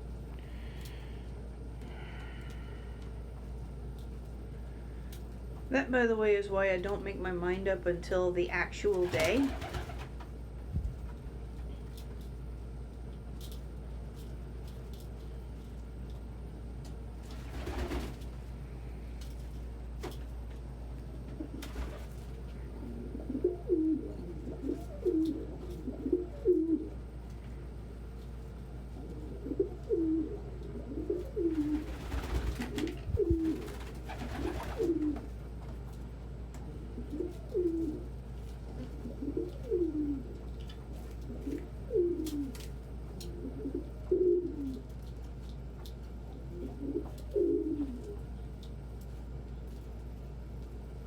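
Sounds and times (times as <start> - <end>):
pigeons cooing: 21.3 - 27.2, 28.8 - 35.4, 36.6 - 44.9, 46.2 - 48.3.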